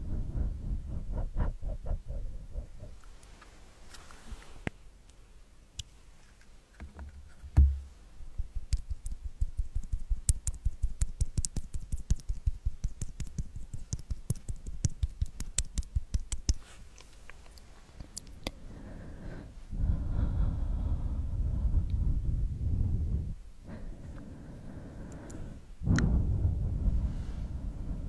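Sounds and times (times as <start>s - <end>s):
heavy knock: 7.6s - 7.8s.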